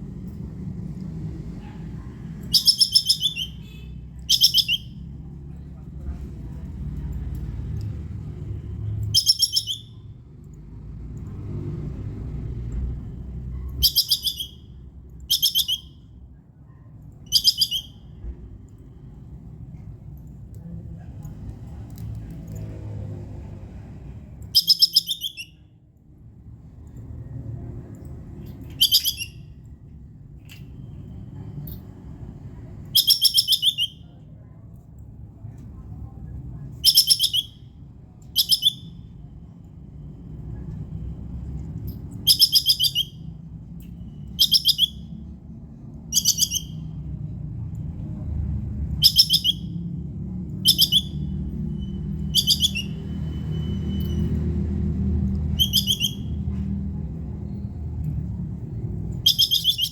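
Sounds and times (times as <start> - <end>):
squirrel chattering call: 2.5 - 5.0, 9.1 - 10.0, 13.8 - 14.7, 15.3 - 16.0, 17.3 - 18.0, 24.5 - 25.6, 28.7 - 29.5, 33.0 - 34.1, 36.8 - 37.6, 38.3 - 38.9, 42.2 - 43.2, 44.4 - 45.1, 49.0 - 49.8, 50.7 - 53.7, 55.5 - 56.4, 59.2 - 59.9
steady low rumble: 45.0 - 59.9.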